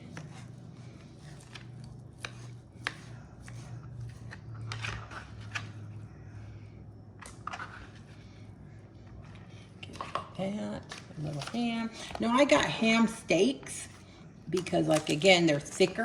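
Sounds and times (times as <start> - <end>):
crackly food handling: 0.0 - 6.0, 9.0 - 12.8, 13.6 - 16.0
steady low hum: 0.0 - 16.0.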